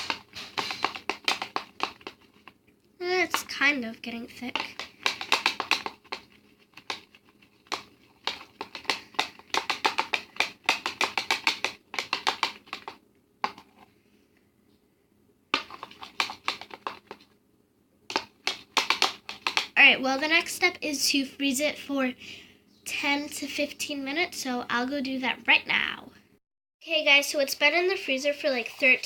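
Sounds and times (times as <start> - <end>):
utensil tapping against a bowl: 0.0 - 2.2, 4.5 - 13.6, 15.6 - 17.2, 18.1 - 19.7.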